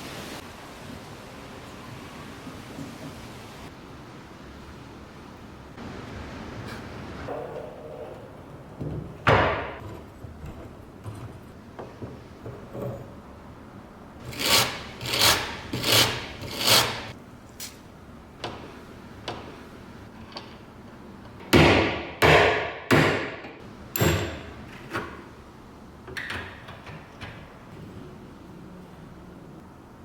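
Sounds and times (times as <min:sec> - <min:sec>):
workshop knocks and strikes: 0:08.8 - 0:13.2, 0:21.4 - 0:25.2.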